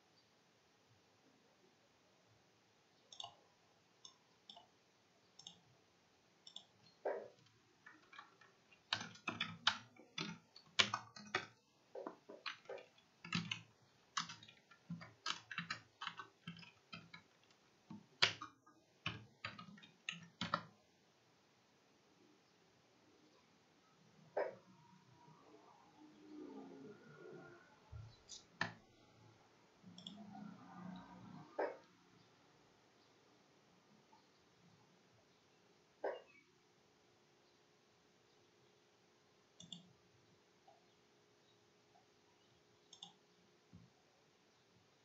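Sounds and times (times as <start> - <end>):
keyboard typing clicks: 3.1 - 3.4, 4.0 - 4.7, 5.4 - 5.6, 6.4 - 20.8, 28.3 - 28.8, 29.9 - 30.2, 39.6 - 39.9, 42.9 - 43.2.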